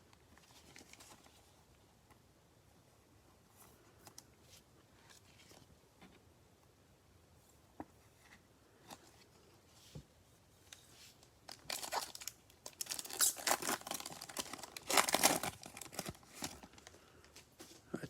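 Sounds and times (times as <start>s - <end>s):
wrapper tearing and crinkling: 11.5s - 16.8s.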